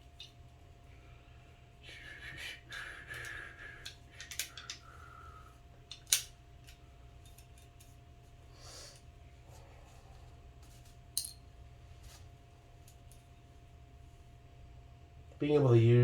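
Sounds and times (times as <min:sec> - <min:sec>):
metal pistol parts scraping and rattling: 0:03.8 - 0:04.8, 0:05.9 - 0:08.0, 0:10.6 - 0:11.4.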